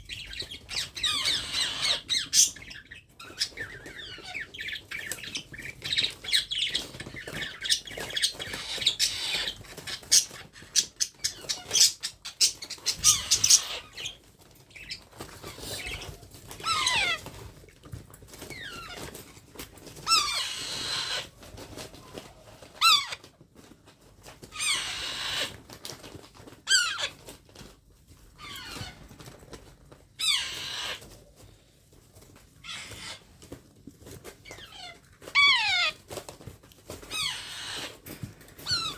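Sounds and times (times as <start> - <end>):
parrot squawking: 0.1 - 6.8, 7.5 - 14.2, 16.6 - 17.2, 22.8 - 23.2, 34.5 - 36.0.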